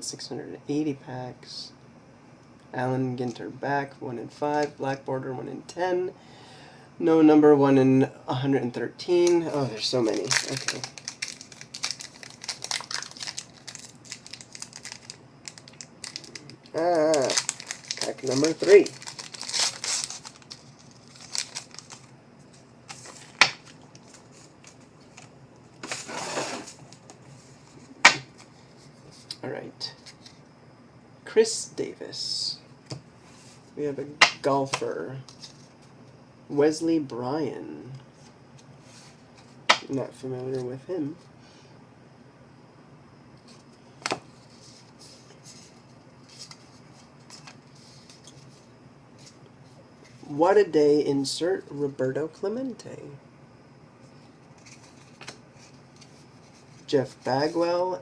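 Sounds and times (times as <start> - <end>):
cards rustling and sliding: 9.4 - 29.4, 43.4 - 49.4, 54.6 - 57.7
foil wrapper tearing and crinkling: 10.0 - 22.1.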